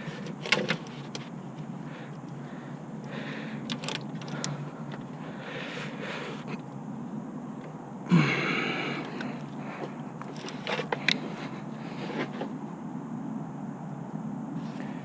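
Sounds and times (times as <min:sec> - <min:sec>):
man breathing hard: 0:01.8 - 0:06.6, 0:08.0 - 0:10.2, 0:10.9 - 0:12.4, 0:14.7 - 0:15.0
man grunting: 0:08.1 - 0:09.0.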